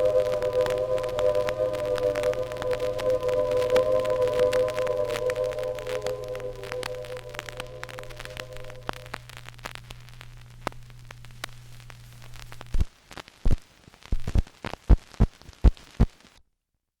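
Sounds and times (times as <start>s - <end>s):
steady low hum: 0.0s - 12.7s
record hiss and crackle: 0.0s - 16.4s.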